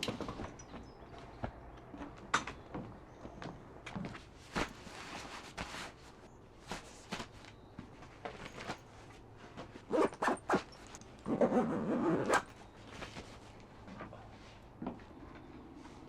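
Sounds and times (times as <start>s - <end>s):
zipper rasps: 9.9s - 12.6s.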